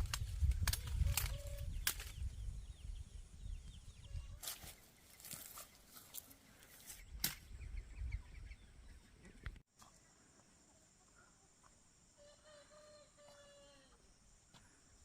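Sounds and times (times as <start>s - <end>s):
chickens rustling and scuffling: 4.3s - 7.4s.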